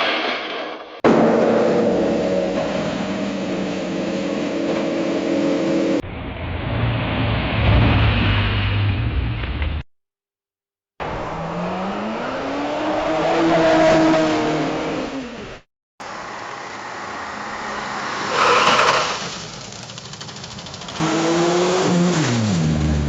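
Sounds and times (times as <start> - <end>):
road noise: 1.1 - 9.8, 11.0 - 23.0
tire screech: 16.5 - 19.8
car engine accelerating: 19.6 - 23.0.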